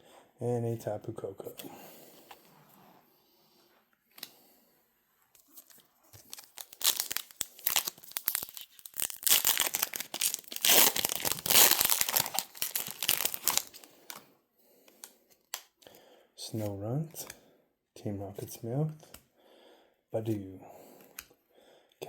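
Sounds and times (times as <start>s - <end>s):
wrapper tearing and crinkling: 5.4s - 14.2s.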